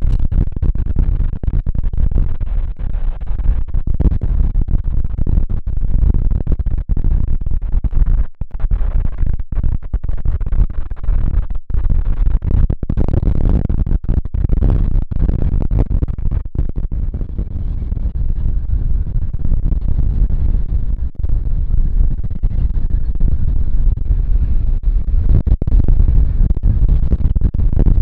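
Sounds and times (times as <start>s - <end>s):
wind buffeting microphone: 12.1s - 28.0s.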